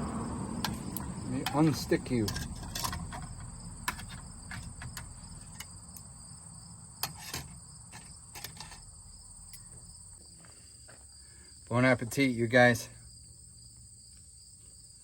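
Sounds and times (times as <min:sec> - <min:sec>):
crickets chirping: 0:00.0 - 0:15.0.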